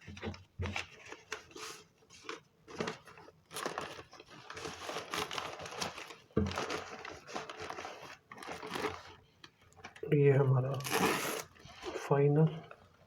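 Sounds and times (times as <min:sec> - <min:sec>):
packaging crinkling and rustling: 0:00.0 - 0:10.0.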